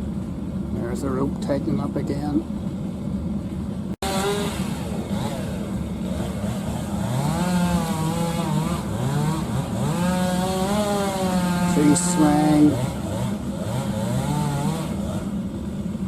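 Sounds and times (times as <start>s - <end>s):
chainsaw engine revving: 4.0s - 16.0s.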